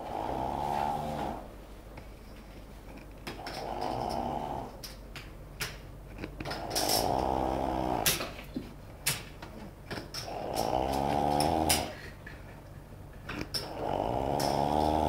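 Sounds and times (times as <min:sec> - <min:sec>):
man snoring loudly: 0:00.0 - 0:01.5, 0:03.4 - 0:04.8, 0:06.5 - 0:08.2, 0:10.2 - 0:12.1, 0:13.6 - 0:15.0.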